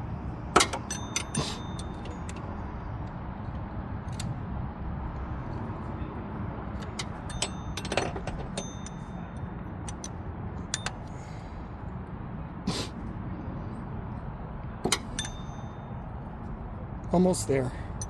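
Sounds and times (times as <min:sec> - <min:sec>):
metal tools clinking: 0:00.6 - 0:02.5, 0:06.8 - 0:11.1, 0:14.8 - 0:16.0.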